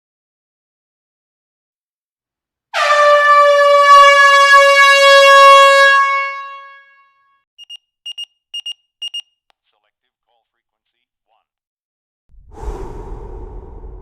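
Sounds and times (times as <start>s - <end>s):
loud horn blast: 2.8s - 7.2s
alarm clock double beeps: 7.6s - 9.3s.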